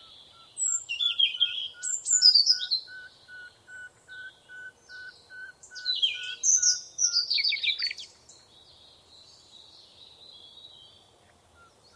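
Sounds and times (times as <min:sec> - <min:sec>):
high twittering birdsong: 0:00.0 - 0:11.0.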